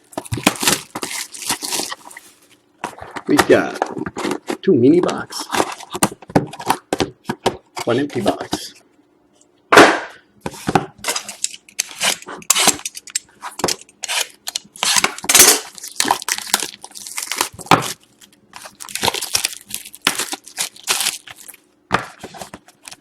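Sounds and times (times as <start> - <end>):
cardboard tearing and rustling: 0.0 - 4.6, 11.0 - 23.0.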